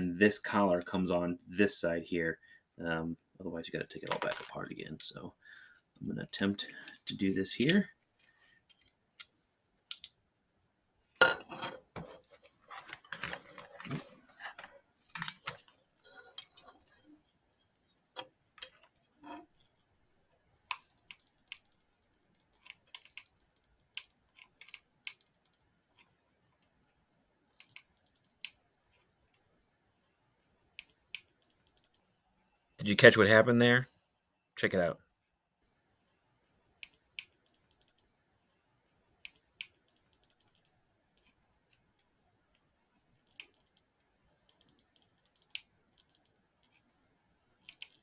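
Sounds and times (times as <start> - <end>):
small plastic parts clicking: 9.9 - 10.1, 20.7 - 26.7, 27.5 - 28.6, 43.2 - 46.8, 47.6 - 48.0.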